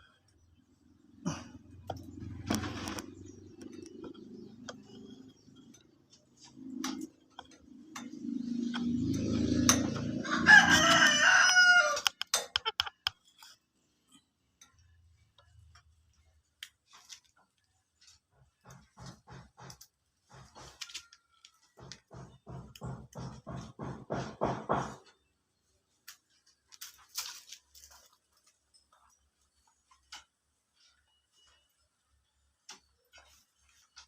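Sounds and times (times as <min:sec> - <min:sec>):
rooster-like crow: 0:08.7 - 0:12.2.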